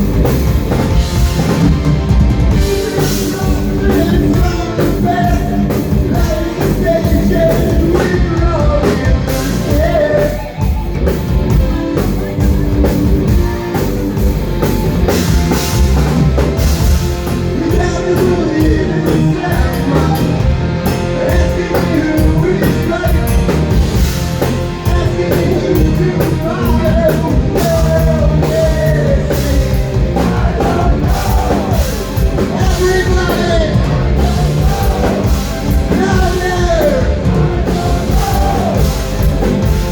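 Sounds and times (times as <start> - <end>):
live rock band playing: 0.0 - 39.9
person singing: 2.5 - 10.8, 17.3 - 39.9.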